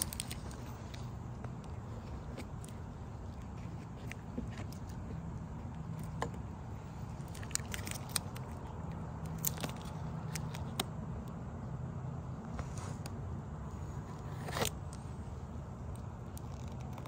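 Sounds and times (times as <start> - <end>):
steady low hum: 0.0 - 17.0
sticky sealant crackles: 7.2 - 10.9, 15.9 - 17.0.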